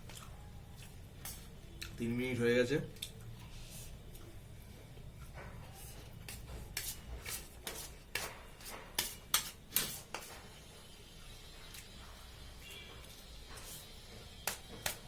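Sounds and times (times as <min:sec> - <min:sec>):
wet mouth clicks and smacks chewing: 0:02.9 - 0:03.4.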